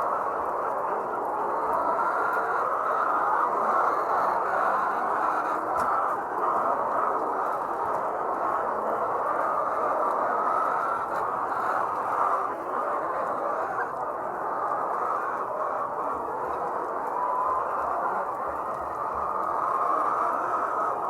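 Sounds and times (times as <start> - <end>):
hens clucking: 0.0 - 21.0.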